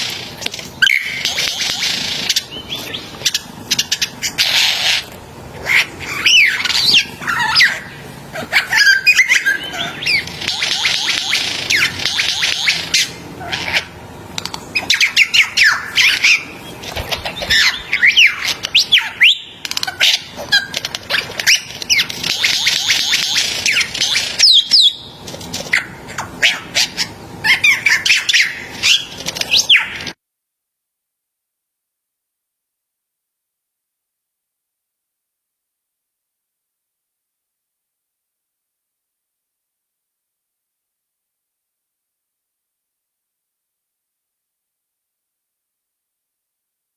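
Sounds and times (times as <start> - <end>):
bird singing with buzzing rattles: 0.0 - 30.2.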